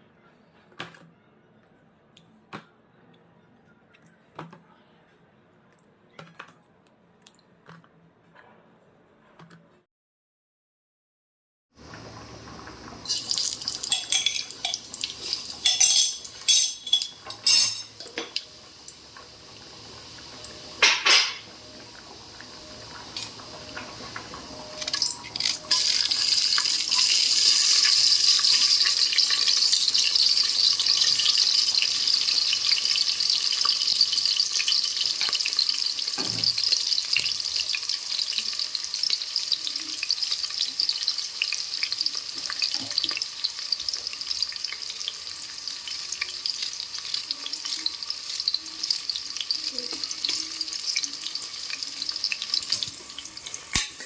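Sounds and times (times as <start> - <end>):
food sizzling in hot oil: 11.8 - 54.0.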